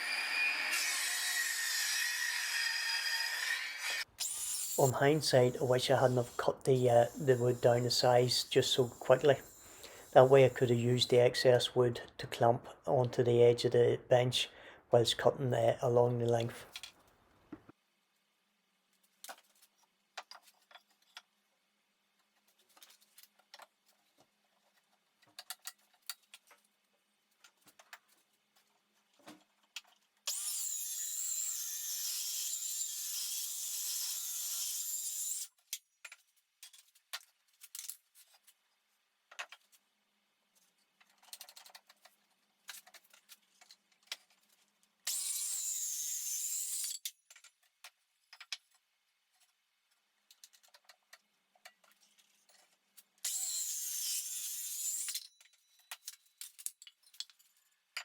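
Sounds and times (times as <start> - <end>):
clicks and knocks handling wood: 40.6 - 44.7, 47.3 - 53.0.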